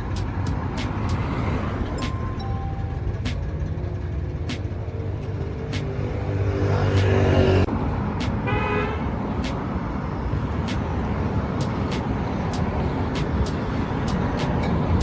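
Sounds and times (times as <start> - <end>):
city street traffic: 0.0 - 15.0
vehicle low hum: 0.0 - 15.0
car horn toot: 8.5 - 9.0.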